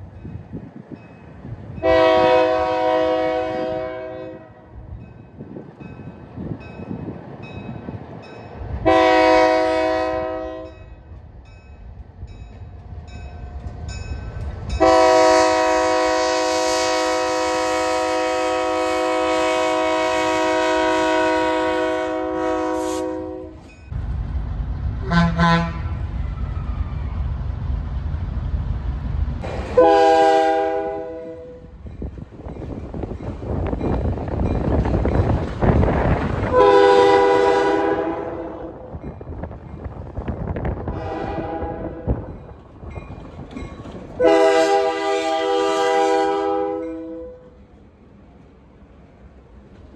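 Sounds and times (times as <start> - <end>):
train rumbling past: 0.0 - 49.9
locomotive air horn blasts: 1.8 - 4.7, 8.8 - 10.8, 14.8 - 23.6, 25.0 - 26.0, 29.7 - 31.7, 36.5 - 38.9, 40.9 - 42.3, 44.2 - 47.5.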